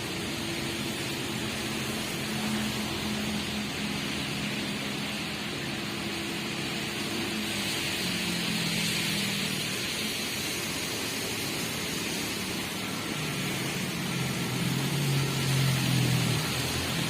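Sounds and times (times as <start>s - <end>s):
diesel engine revving: 0.0s - 17.0s
steady hiss: 0.0s - 17.0s.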